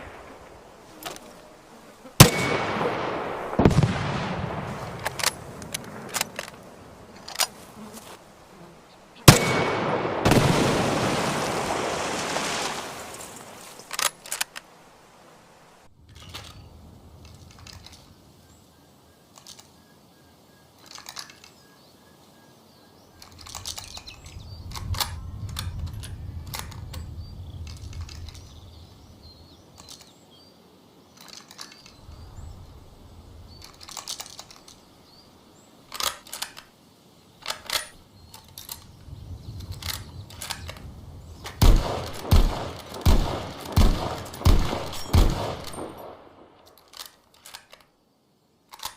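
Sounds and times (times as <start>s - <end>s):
loud gunshots: 9.3s - 11.3s, 41.6s - 46.2s
sharp clicks: 37.4s - 48.0s.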